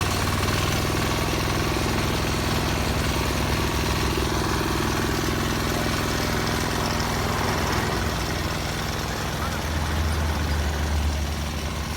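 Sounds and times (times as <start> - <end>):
diesel mower engine chugging: 0.0 - 11.9.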